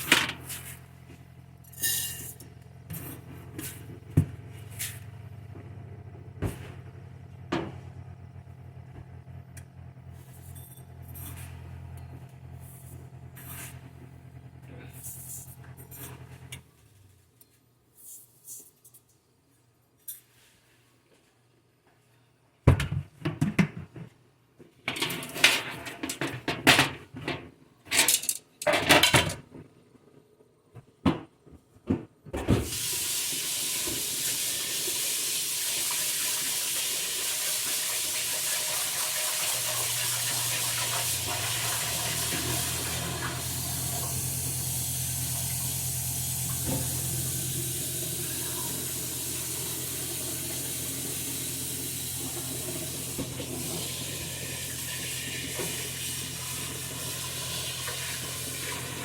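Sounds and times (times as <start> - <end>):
pots and utensils clattering: 1.7 - 2.4
tap water running into sink: 32.6 - 59.0.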